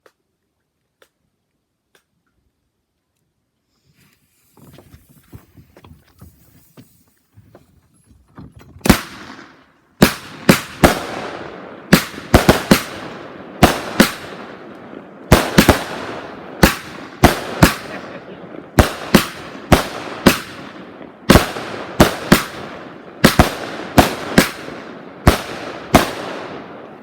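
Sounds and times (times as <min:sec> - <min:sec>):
faint fireworks crackling: 0:03.7 - 0:07.7, 0:08.8 - 0:27.0
fireworks bangs echoing: 0:08.8 - 0:27.0.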